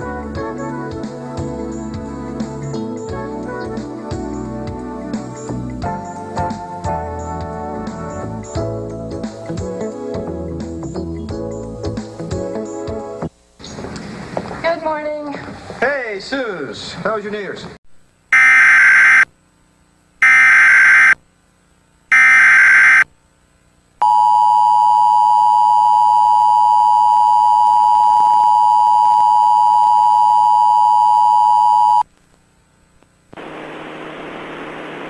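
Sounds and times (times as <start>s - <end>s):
two-tone attention tone: 18.3s - 19.3s, 20.2s - 21.2s, 22.1s - 23.0s, 24.0s - 32.0s
raspy warbling data bursts: 20.2s - 21.2s, 22.1s - 23.0s
steady hiss: 32.1s - 35.0s.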